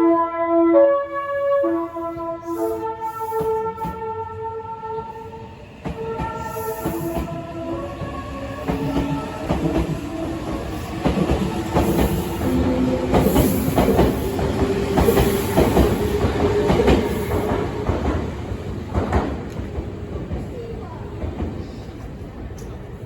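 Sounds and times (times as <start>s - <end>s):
train wheels clacking over rail joints: 8.5s - 20.6s.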